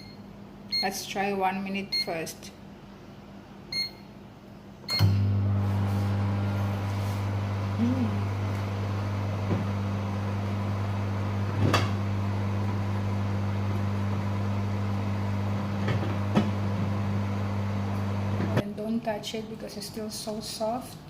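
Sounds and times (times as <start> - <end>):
microwave oven humming: 2.8 - 18.6.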